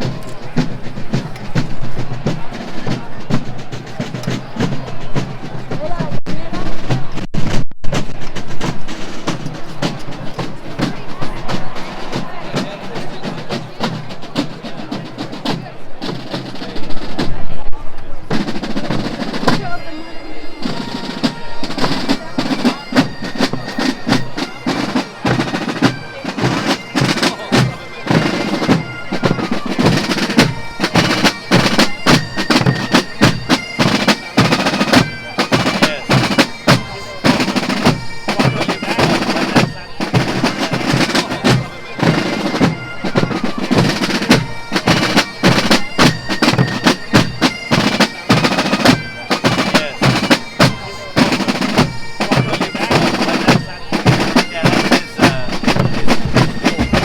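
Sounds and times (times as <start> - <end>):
snare drum rolls: 0.0 - 17.4, 20.6 - 57.0
bagpipe melody: 18.5 - 57.0.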